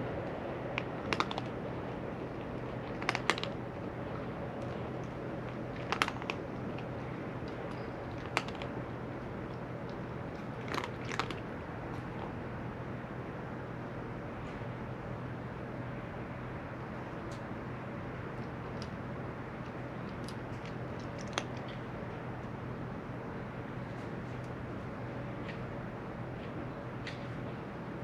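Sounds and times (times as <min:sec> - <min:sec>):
steady low hum: 0:00.0 - 0:28.0
cat crunching food: 0:00.1 - 0:12.4, 0:18.2 - 0:22.5.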